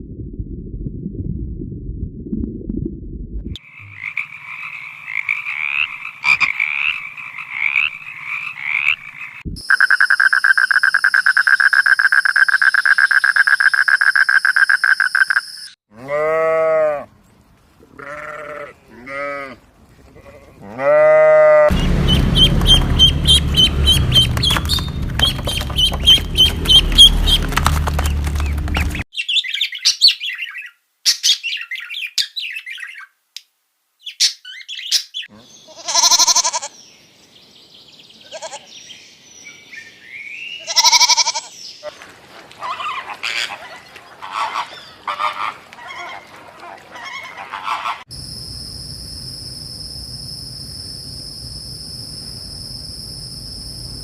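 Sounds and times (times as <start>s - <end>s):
high chirps: 6.2s - 15.8s, 21.7s - 27.5s
animal bleats: 15.9s - 17.1s, 17.8s - 21.7s, 35.3s - 36.8s, 38.2s - 38.7s, 40.6s - 41.5s
loud rumbling background: 21.7s - 29.0s.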